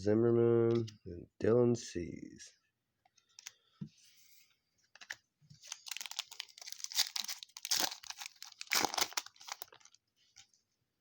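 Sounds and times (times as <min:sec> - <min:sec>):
foil wrapper crinkling: 0:05.0 - 0:10.0.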